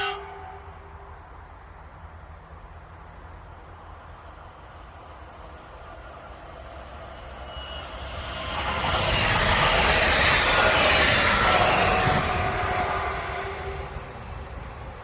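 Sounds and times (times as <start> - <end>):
train passing on track: 0.0 - 15.0.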